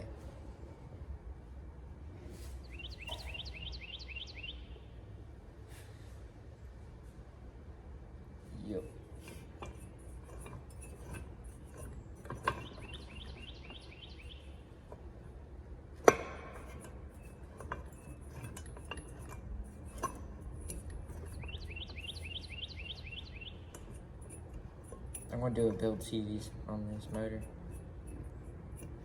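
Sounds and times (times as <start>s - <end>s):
metal parts clinking: 9.2s - 15.4s, 16.0s - 29.0s.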